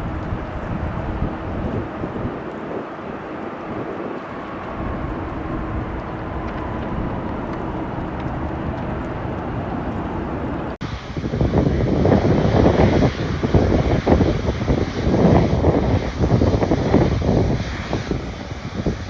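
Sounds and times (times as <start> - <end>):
jet engines rushing: 0.0 - 19.0
wind buffeting microphone: 0.0 - 19.0.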